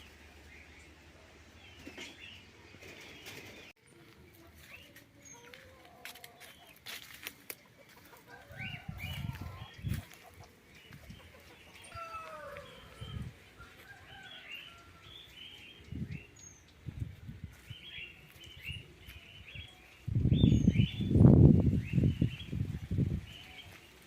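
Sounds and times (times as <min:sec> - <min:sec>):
chickens clucking: 0:01.6 - 0:17.2.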